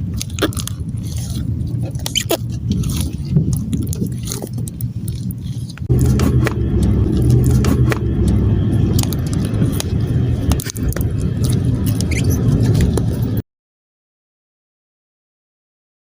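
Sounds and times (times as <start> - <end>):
low rumble: 0.0 - 13.4
slime squishing: 0.0 - 13.4.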